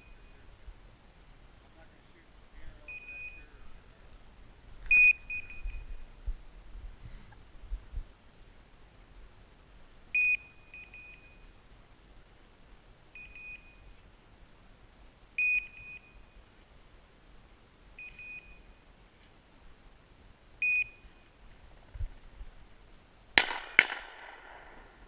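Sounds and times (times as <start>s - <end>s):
beeper collar short high beeps: 2.8s - 3.7s, 4.9s - 6.0s, 18.0s - 18.8s.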